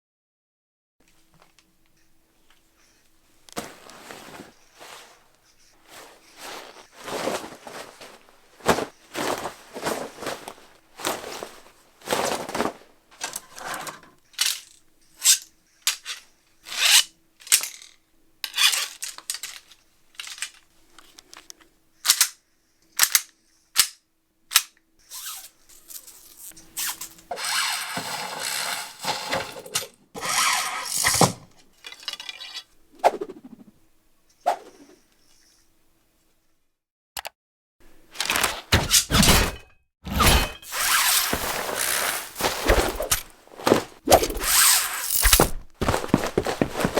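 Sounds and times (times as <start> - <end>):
arrow swishes: 33.0 - 33.6, 34.4 - 34.9.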